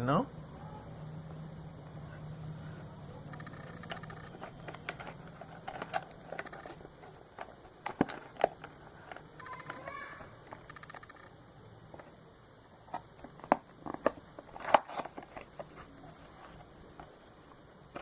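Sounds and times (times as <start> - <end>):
box packaging taps and rustles: 3.7 - 9.8.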